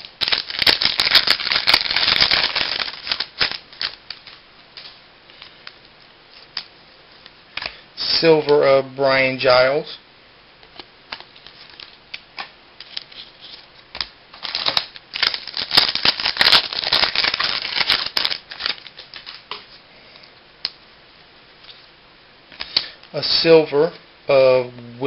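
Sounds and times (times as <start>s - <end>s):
cards rustling and sliding: 10.7s - 19.8s.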